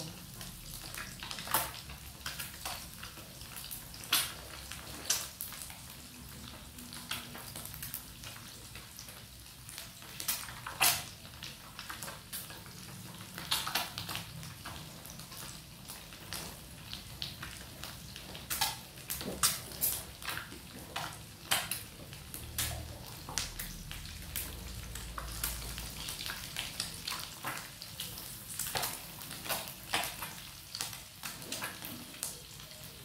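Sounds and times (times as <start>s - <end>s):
eggs deep-frying in sizzling oil: 0.0s - 33.0s.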